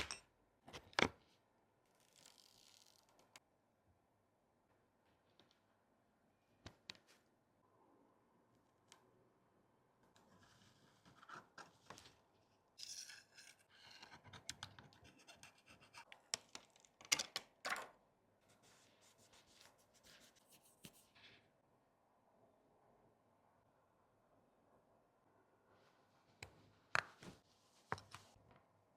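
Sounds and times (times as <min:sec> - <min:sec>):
tools scraping on phone glass: 0:12.8 - 0:16.2.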